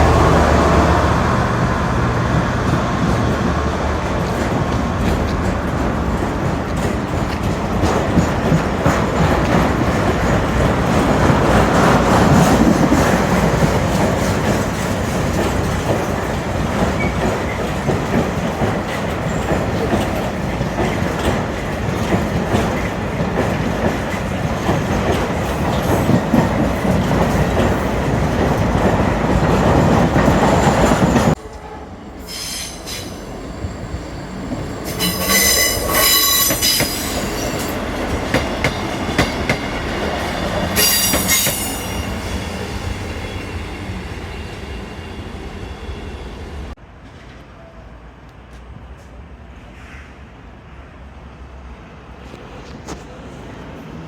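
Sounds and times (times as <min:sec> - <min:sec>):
train wheels rumbling on rail: 0:00.0 - 0:54.0
wheel squeal: 0:32.2 - 0:37.7.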